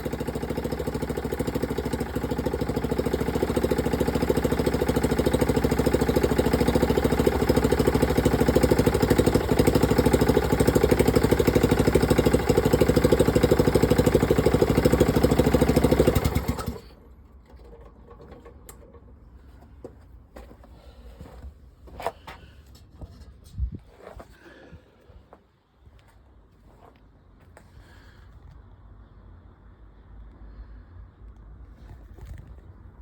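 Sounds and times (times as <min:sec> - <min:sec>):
small petrol engine running: 0:00.0 - 0:18.7.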